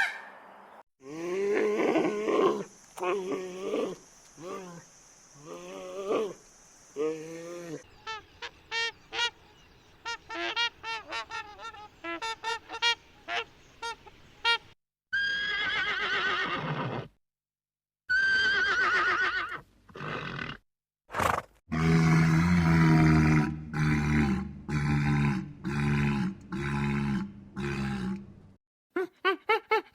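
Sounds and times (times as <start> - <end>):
loud low drawn-out animal call: 21.7 - 28.3.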